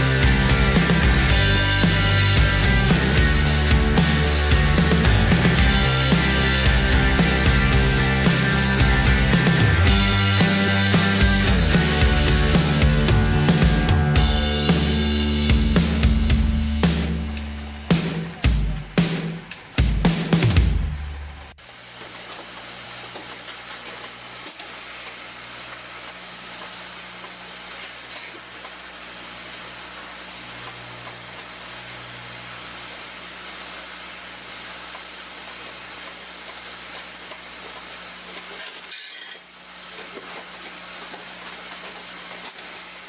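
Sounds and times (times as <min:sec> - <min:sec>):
bagging machines hissing: 0:00.0 - 0:43.0
low mechanical hum: 0:20.4 - 0:43.0.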